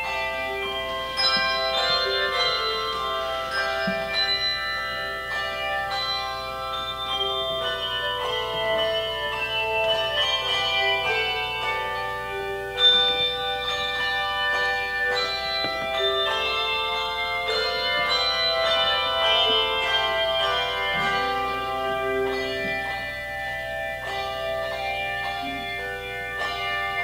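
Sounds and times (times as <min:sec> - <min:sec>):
handbells ringing a melody: 0:00.0 - 0:27.0.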